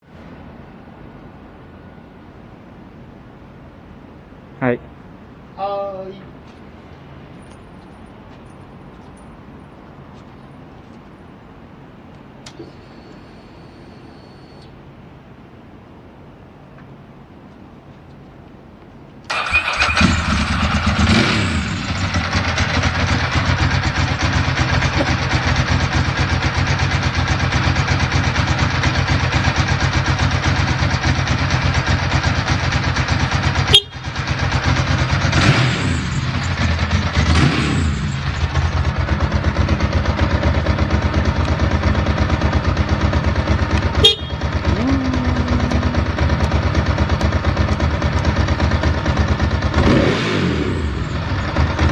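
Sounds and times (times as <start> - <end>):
motorcycle engine idling: 19.3 - 51.9.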